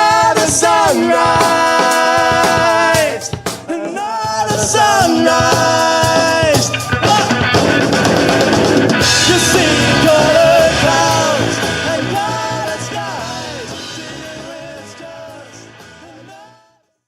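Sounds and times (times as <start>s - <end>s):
live rock band with singer: 0.0s - 16.7s.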